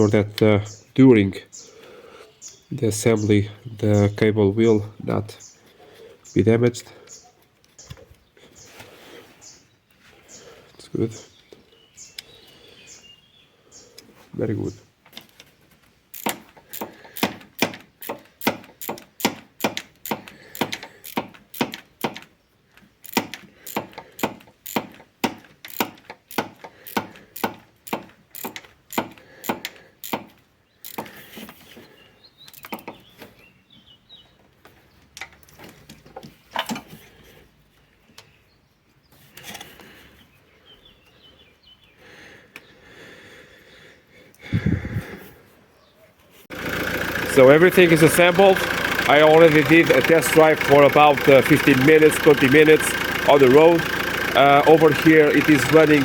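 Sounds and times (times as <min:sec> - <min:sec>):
hand tool clicking: 0:16.1 - 0:31.2.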